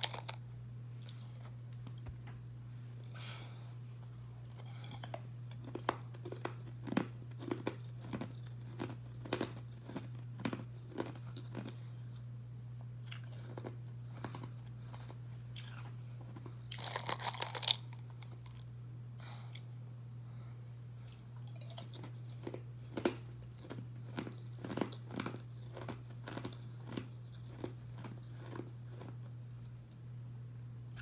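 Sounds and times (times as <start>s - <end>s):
crunching ice: 0.0s - 0.4s, 16.7s - 18.7s.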